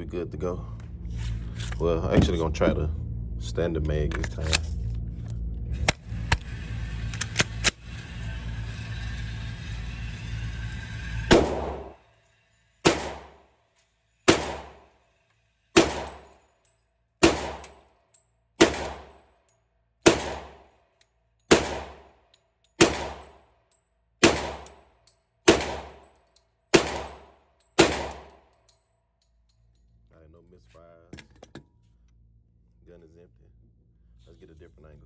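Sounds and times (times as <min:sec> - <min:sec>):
pistol shots: 0:11.3 - 0:12.0, 0:12.8 - 0:13.4, 0:14.3 - 0:14.9, 0:15.8 - 0:16.4, 0:17.2 - 0:17.8, 0:18.6 - 0:19.2, 0:20.0 - 0:20.7, 0:21.5 - 0:22.1, 0:22.8 - 0:23.4, 0:24.2 - 0:24.8, 0:25.5 - 0:26.1, 0:26.7 - 0:28.4.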